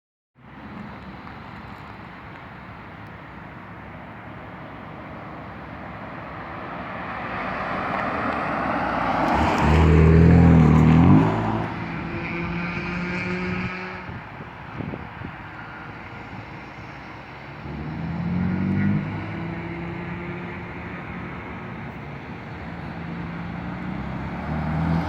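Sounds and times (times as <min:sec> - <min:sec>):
car engine accelerating: 0:06.3 - 0:14.1, 0:17.5 - 0:25.0.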